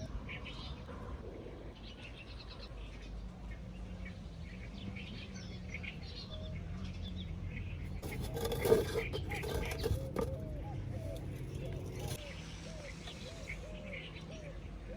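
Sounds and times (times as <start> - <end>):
low steady background rumble: 0.0 - 14.9.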